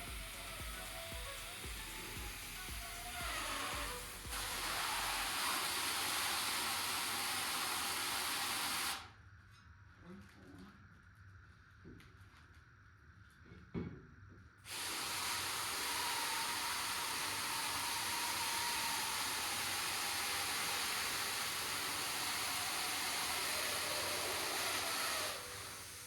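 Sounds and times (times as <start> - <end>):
gas hissing into balloon: 0.0 - 9.0, 14.7 - 26.0.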